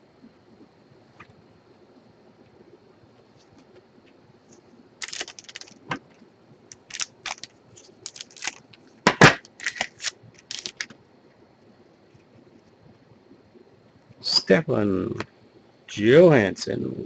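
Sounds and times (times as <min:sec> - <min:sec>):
crinkling wrapper and cards: 0:05.0 - 0:06.0, 0:06.7 - 0:11.0.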